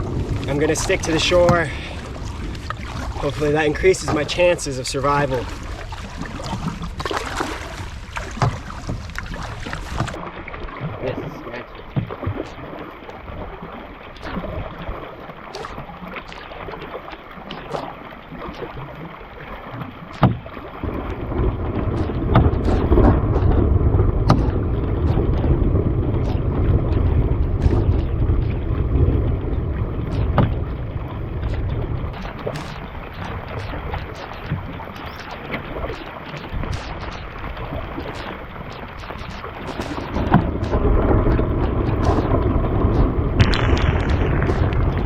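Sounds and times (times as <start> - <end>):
loud low rumble: 0.0 - 3.8, 21.2 - 32.3, 40.1 - 45.0
canoe knocking: 0.0 - 10.2, 11.8 - 12.6, 20.2 - 20.6, 21.2 - 45.0
water splashing: 0.0 - 45.0.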